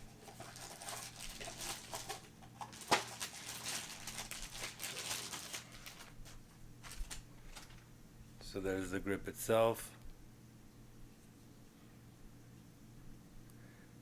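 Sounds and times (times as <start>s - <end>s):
plastic packaging rustling: 0.0s - 7.9s.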